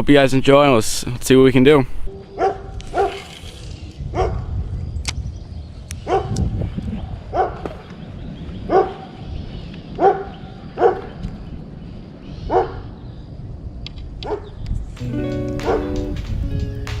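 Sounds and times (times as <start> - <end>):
dog barking: 2.4 - 3.1, 4.2 - 4.4, 6.0 - 6.4, 7.3 - 7.7, 8.7 - 9.1, 10.0 - 11.1, 12.5 - 12.8, 14.2 - 14.5, 15.6 - 15.9
music: 15.0 - 17.0.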